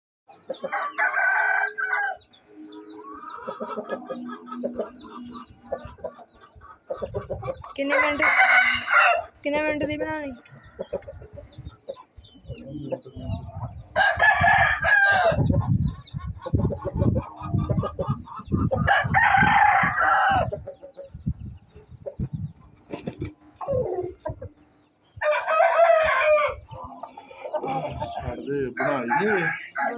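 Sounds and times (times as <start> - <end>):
rooster clucking: 0.3 - 29.9
rooster crowing: 0.7 - 2.2, 8.0 - 9.3, 14.0 - 15.4, 18.9 - 20.5, 25.2 - 26.6, 28.8 - 29.9.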